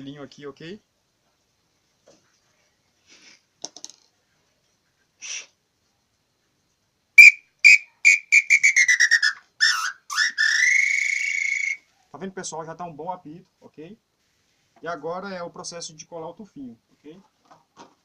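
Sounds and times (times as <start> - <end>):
bird call whistle: 7.2 - 11.9.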